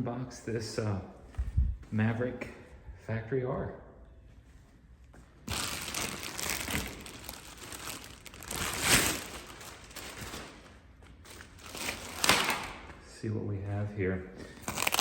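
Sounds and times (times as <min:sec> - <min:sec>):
packaging crinkling and rustling: 0:05.4 - 0:12.8, 0:14.6 - 0:15.0.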